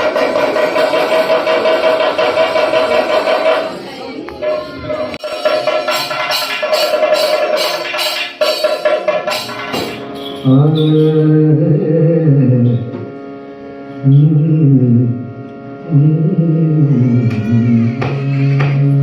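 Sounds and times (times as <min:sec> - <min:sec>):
sharp percussion strikes: 0:00.0 - 0:11.4
steady drone: 0:09.3 - 0:19.0
person singing gliding phrases: 0:10.6 - 0:12.8, 0:14.1 - 0:15.2, 0:15.8 - 0:19.0.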